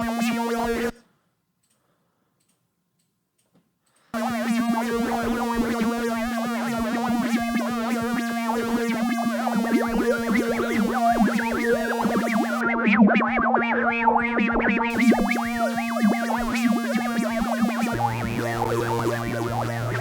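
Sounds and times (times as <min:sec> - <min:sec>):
synthesizer drone: 0:00.0 - 0:00.9, 0:04.2 - 0:20.0
warbling chirping synth tones: 0:04.2 - 0:20.0.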